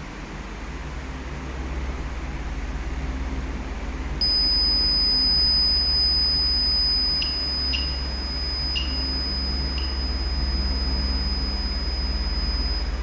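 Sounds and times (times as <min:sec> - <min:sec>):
high-pitched buzzer alarm tone: 0:04.2 - 0:13.0.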